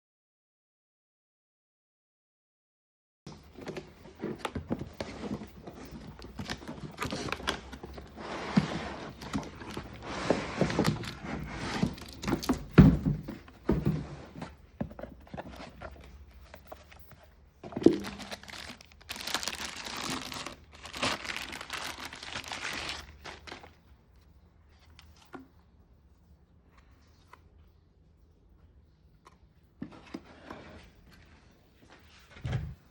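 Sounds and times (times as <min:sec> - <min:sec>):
plastic wrap crinkling: 0:09.1 - 0:12.7, 0:17.6 - 0:23.8.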